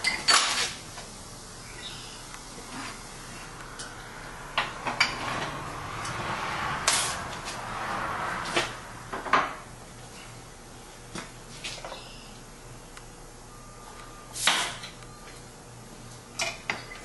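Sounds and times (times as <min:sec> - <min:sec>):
steady rushing noise: 0:03.2 - 0:09.2.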